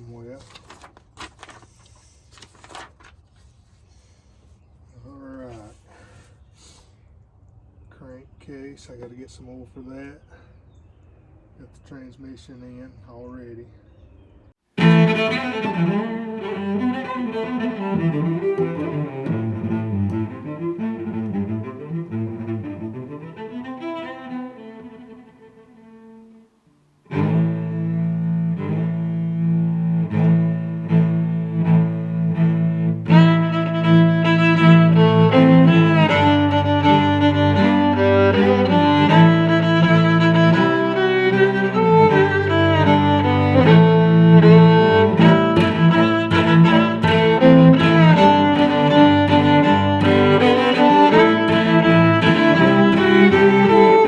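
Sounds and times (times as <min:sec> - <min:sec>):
cello with bowed strings: 0:14.8 - 0:54.0.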